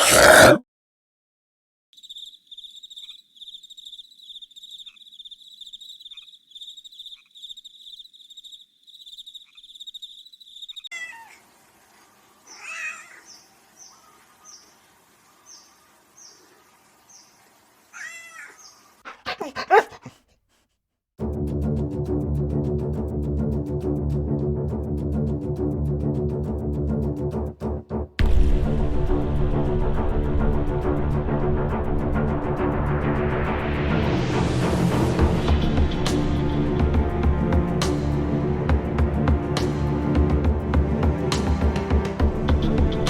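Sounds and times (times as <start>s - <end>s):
high pulsing insect-like trill: 2.0s - 10.9s
cat meowing: 10.9s - 11.4s, 12.5s - 13.3s, 18.0s - 18.7s.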